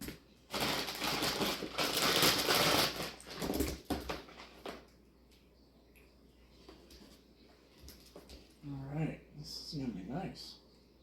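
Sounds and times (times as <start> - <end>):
packaging crinkling: 0.0 - 4.9.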